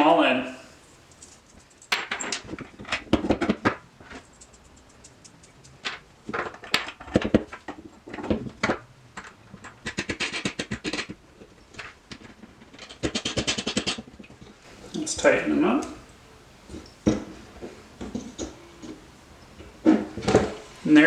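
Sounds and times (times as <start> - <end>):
metal bolts rattling on wood: 0.8 - 8.5, 14.7 - 21.0.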